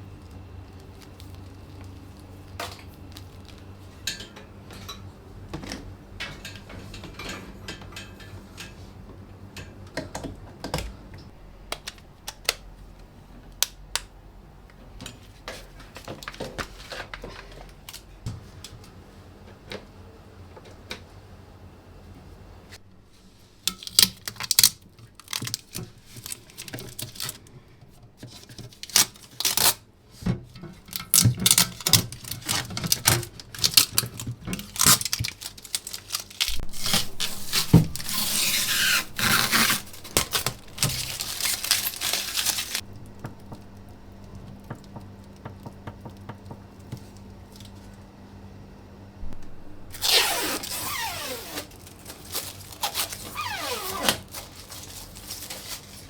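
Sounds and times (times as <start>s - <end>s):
rustling or tearing noise: 0.1s - 3.8s, 31.1s - 43.2s, 49.3s - 56.0s
objects knocking and scraping: 36.5s - 47.2s.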